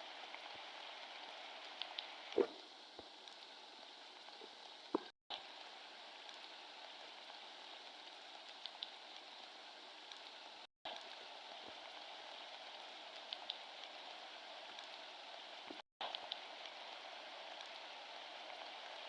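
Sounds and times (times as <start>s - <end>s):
faint steady hiss: 0.0s - 19.0s
light ticks: 1.7s - 3.5s, 4.3s - 5.4s, 8.4s - 9.3s, 13.2s - 13.9s, 15.6s - 16.7s.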